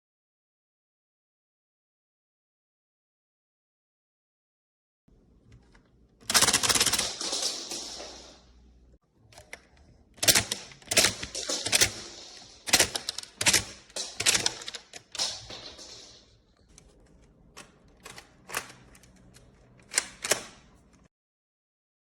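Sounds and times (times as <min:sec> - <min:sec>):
plastic toy gun clicking: 0:09.4 - 0:16.2.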